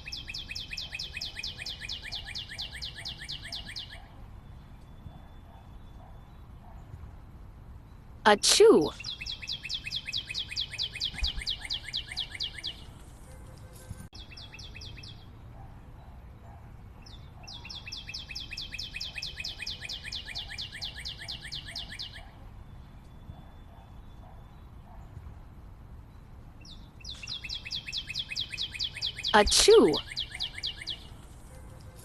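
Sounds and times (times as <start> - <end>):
rapid high bird-like chirps: 0.0 - 4.2, 8.8 - 13.0, 17.1 - 22.3, 26.7 - 31.6.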